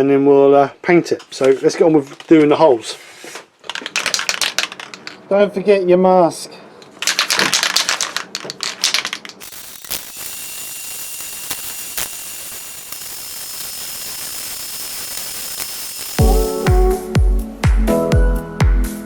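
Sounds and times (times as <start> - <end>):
rapid ratcheting clicks: 8.9 - 17.0
sharp ticks: 9.4 - 17.0
electric drill running: 9.4 - 17.1.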